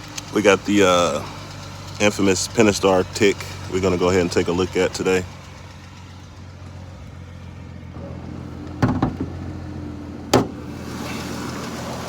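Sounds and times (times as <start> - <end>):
car engine idling with ticking: 0.0 - 12.0
sharp knocks: 8.8 - 9.4, 10.3 - 10.7.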